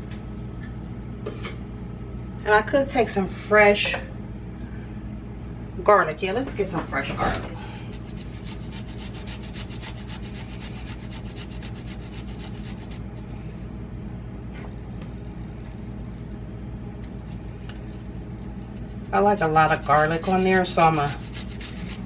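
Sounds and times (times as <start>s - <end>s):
steady low hum: 0.0s - 22.0s
rapid scraping rasp: 7.9s - 13.0s, 17.2s - 22.0s.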